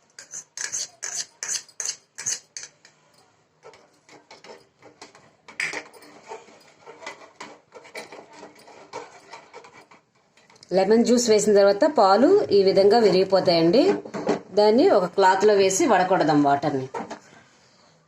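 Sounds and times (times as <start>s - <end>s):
spoon clinking and scraping a pot: 0.0s - 10.7s.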